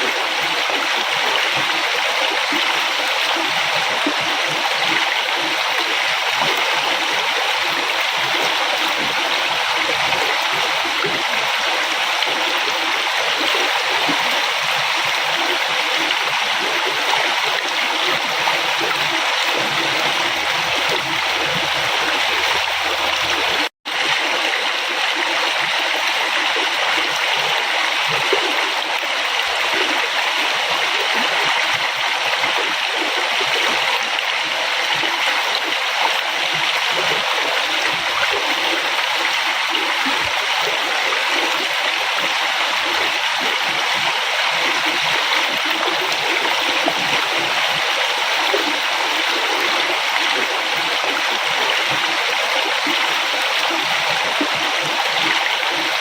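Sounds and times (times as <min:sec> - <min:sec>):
river water rushing: 0:00.0 - 0:25.6.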